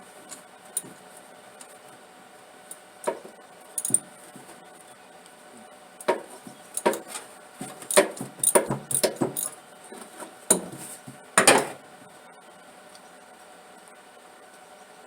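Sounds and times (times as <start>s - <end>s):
metal hand tools clanking: 6.0s - 9.6s.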